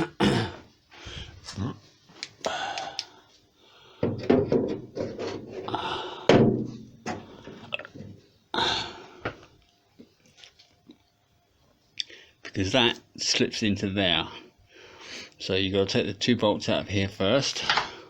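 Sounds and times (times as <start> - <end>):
thunks and clatter of handling: 4.0 - 5.7.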